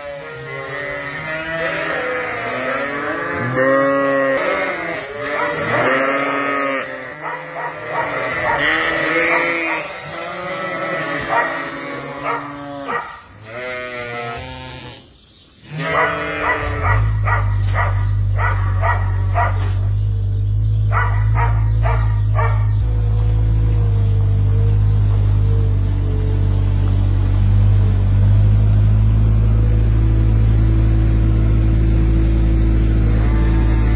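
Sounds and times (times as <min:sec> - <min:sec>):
sheep bleating loudly: 0:00.0 - 0:17.1, 0:32.9 - 0:33.9
low engine rumble: 0:16.2 - 0:33.9.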